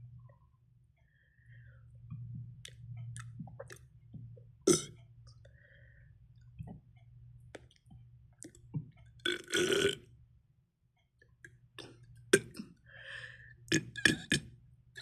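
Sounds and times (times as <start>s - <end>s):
steady low hum: 0.0s - 10.5s
mouth clicks and gulps: 2.1s - 5.4s, 6.4s - 9.8s
person burping: 4.7s - 4.9s, 9.3s - 10.0s, 11.8s - 12.8s, 13.7s - 14.5s.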